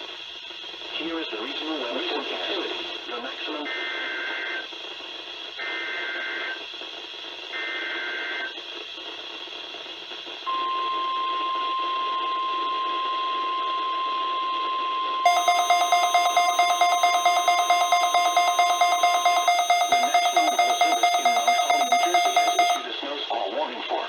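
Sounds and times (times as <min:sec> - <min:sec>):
two-tone digital data warble: 0:15.3 - 0:22.8
rapidly pulsing electronic alarm beep: 0:15.3 - 0:22.9
steady warning alarm tone: 0:15.3 - 0:22.9.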